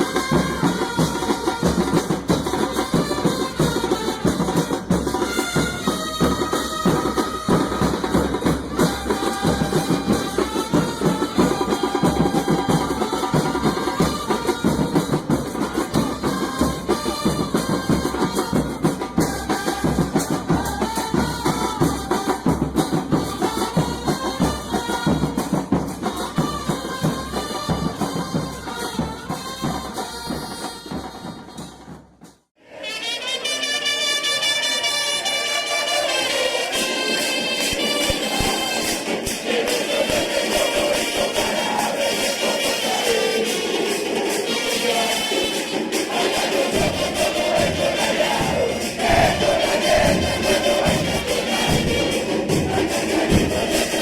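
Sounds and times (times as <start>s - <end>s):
music with busy drums: 0.0s - 32.5s, 36.0s - 54.0s.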